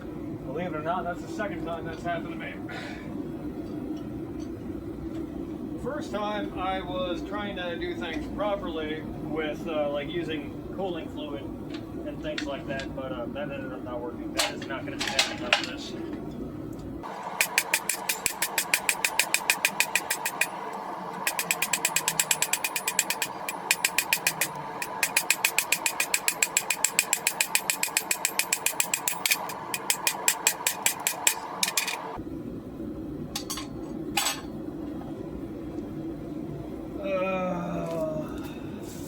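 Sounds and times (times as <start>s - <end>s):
steady background hiss: 0.0s - 4.9s, 5.5s - 27.1s.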